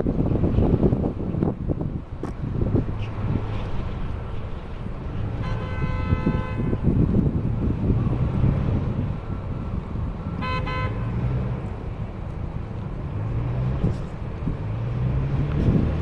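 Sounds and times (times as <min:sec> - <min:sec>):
vehicle engines rumbling: 0:00.0 - 0:16.0
vehicle horn honking: 0:05.3 - 0:07.0, 0:10.4 - 0:11.3.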